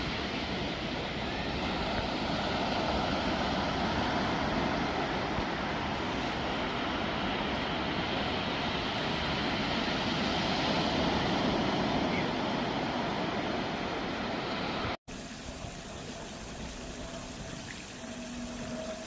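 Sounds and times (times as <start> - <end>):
rushing outdoor noise: 0.0 - 19.0
steady hiss: 15.1 - 19.0.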